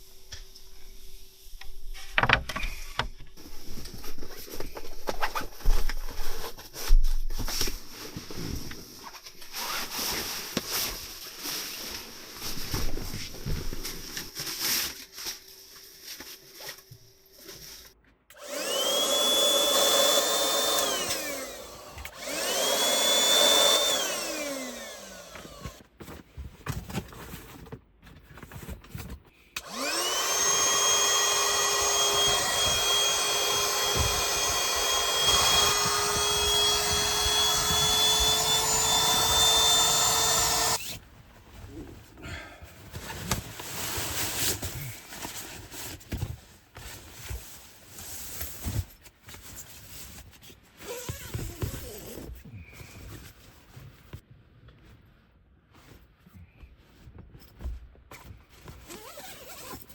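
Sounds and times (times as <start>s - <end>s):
small electric motor whirring: 18.3s - 25.8s, 29.6s - 41.0s.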